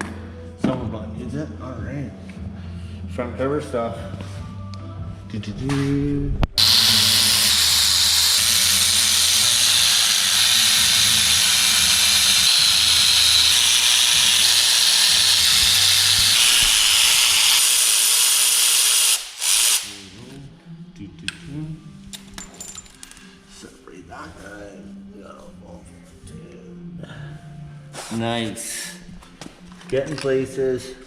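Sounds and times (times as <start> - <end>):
compressed air hissing: 6.6 - 20.2.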